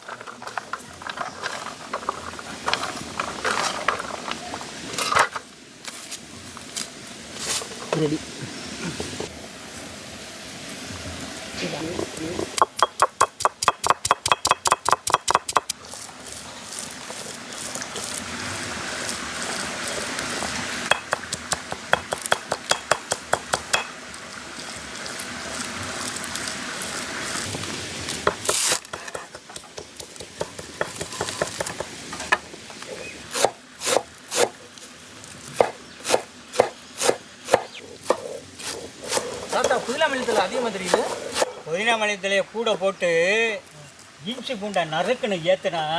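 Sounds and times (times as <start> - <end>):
steady background hiss: 0.0 - 45.9
knife chopping on a board: 35.6 - 39.8, 40.8 - 41.5.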